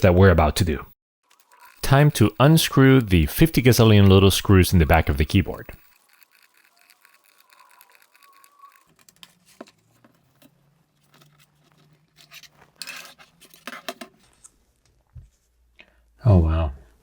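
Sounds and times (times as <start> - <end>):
screwdriver clicking and scratching: 1.3 - 10.5.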